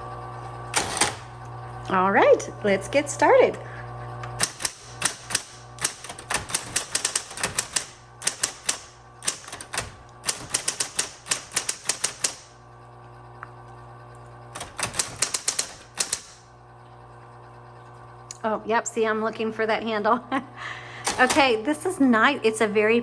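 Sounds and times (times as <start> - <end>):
typewriter motor humming: 0.7 - 2.0, 4.3 - 12.6, 14.4 - 16.6, 21.0 - 21.7
typewriter type-bar strikes: 0.8 - 1.3, 4.4 - 12.5, 14.6 - 16.4, 21.1 - 21.6.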